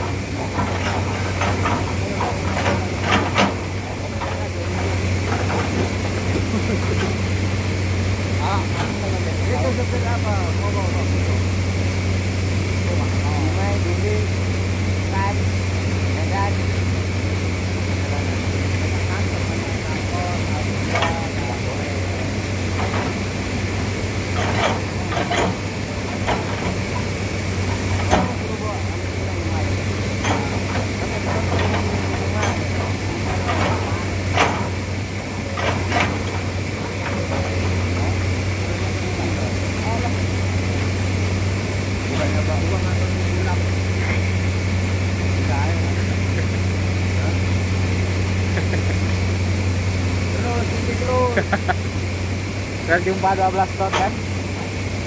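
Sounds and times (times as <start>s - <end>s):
short knocks and clatters: 0.0s - 7.6s, 18.7s - 41.2s
diesel engine running: 0.0s - 55.0s.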